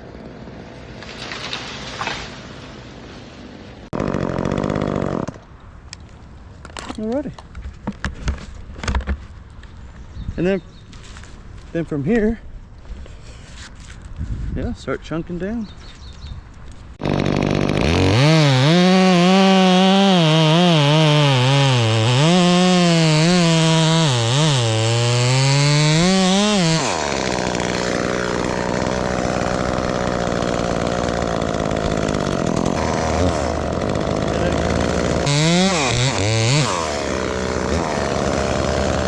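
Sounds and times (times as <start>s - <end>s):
chainsaw cutting wood: 3.9s - 5.5s, 17.0s - 39.0s.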